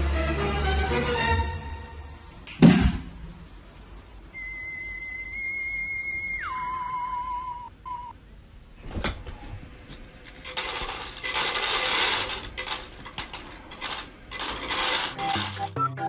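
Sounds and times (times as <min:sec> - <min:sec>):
hard objects clattering and rattling: 0:08.8 - 0:15.8.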